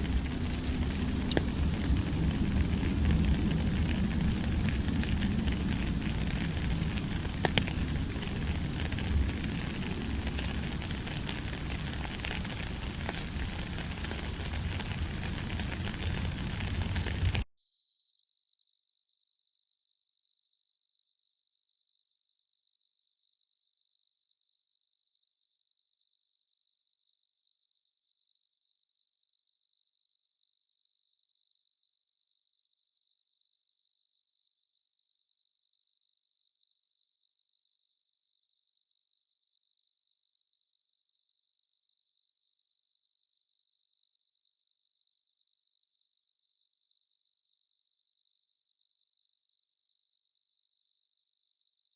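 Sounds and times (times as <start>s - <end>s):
crickets trilling: 0.0s - 17.4s.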